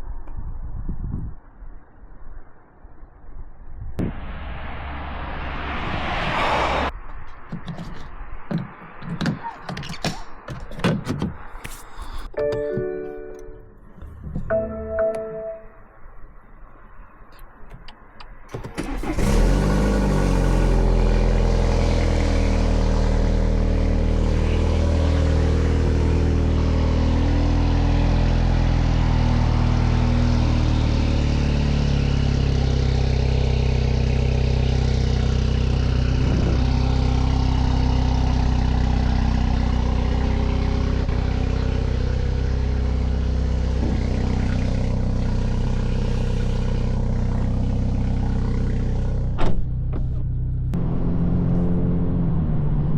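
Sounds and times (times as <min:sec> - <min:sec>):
car engine starting and idling: 0:17.4 - 0:52.9.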